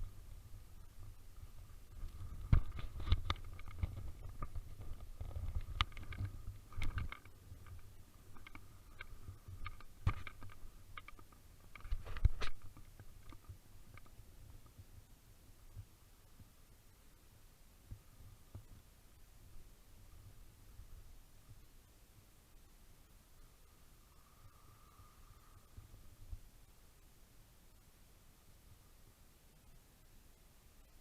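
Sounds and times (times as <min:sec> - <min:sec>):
sharp clicks and knocks: 0:02.0 - 0:14.8.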